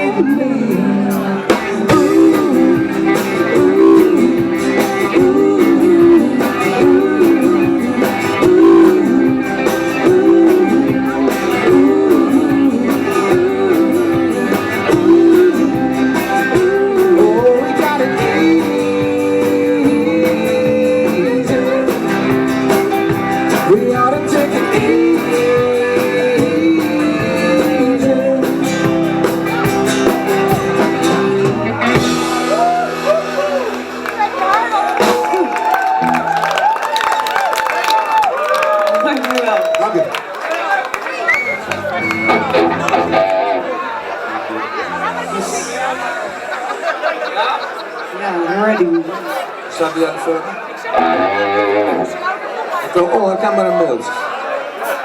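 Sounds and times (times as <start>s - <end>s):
person singing: 0.0s - 34.0s
live rock band playing: 0.0s - 38.0s, 41.5s - 47.7s, 51.0s - 55.0s
electric guitar: 0.0s - 39.4s, 41.6s - 46.9s, 50.9s - 52.3s.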